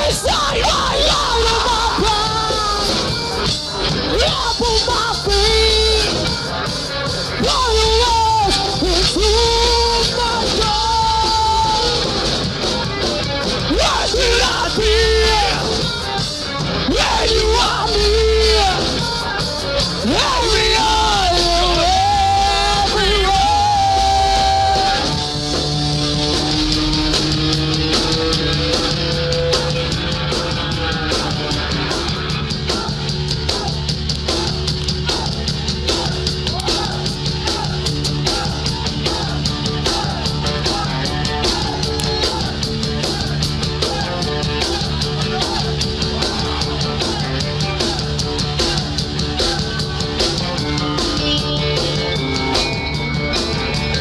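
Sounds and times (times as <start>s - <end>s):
repeating guitar riff: 0.0s - 30.2s
bass guitar: 0.0s - 54.0s.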